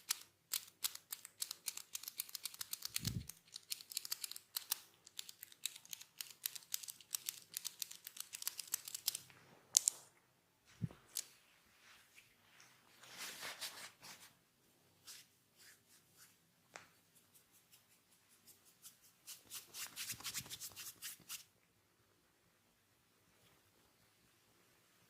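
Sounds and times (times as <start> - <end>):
hands rubbing scalp and hair: 15.0 - 21.5.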